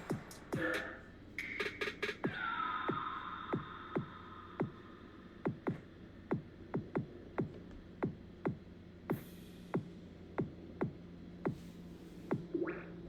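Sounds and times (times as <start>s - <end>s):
deep kick drums: 5.5s - 11.7s.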